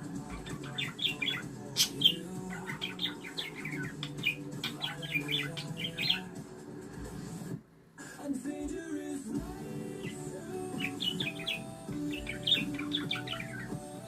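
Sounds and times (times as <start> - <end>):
budgerigar chirping: 0.2 - 6.3, 10.0 - 14.0.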